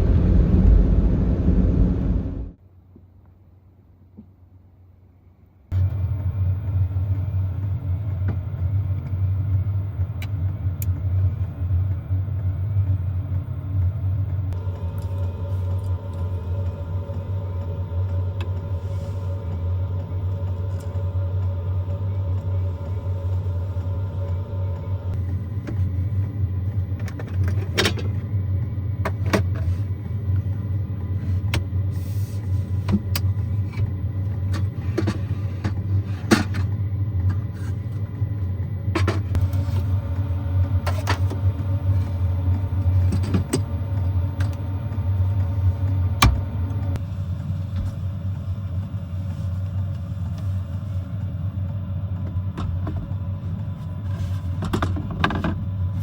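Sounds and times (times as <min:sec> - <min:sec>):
van engine rumbling: 0:00.0 - 0:02.6.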